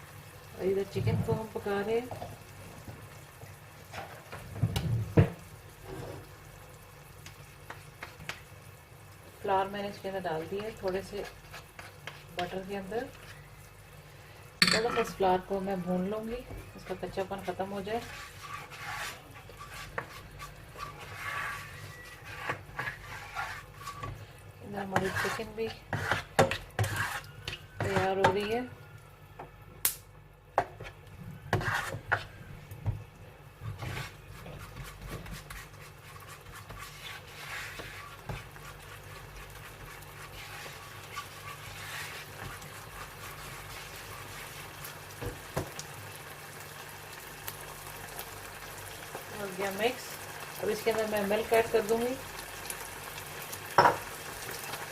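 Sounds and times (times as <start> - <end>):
frying sizzle: 0.0 - 29.2, 29.8 - 54.9
spoon stirring and scraping a pan: 0.8 - 6.4, 7.2 - 8.5, 9.9 - 13.9, 16.4 - 28.6, 30.6 - 33.0, 33.6 - 46.8
spoon knocking against a pan: 53.8 - 54.0.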